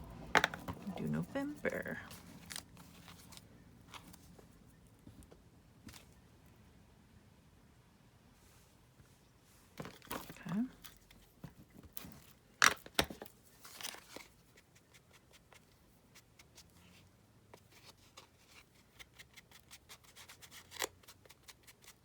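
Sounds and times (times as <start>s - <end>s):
paper rustling: 13.5s - 15.6s.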